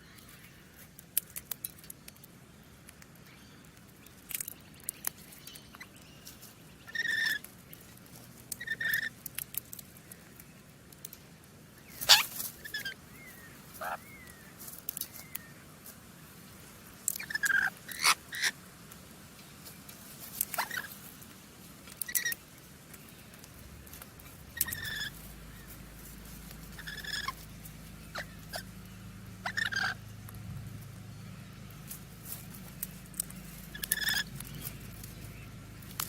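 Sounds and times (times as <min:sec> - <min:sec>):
low steady hum: 0:00.0 - 0:36.0
parrots chirping and squawking: 0:06.9 - 0:07.5, 0:08.6 - 0:09.2, 0:12.0 - 0:14.4, 0:17.1 - 0:18.6, 0:20.4 - 0:21.0, 0:21.9 - 0:22.4, 0:23.9 - 0:30.1, 0:33.2 - 0:36.0.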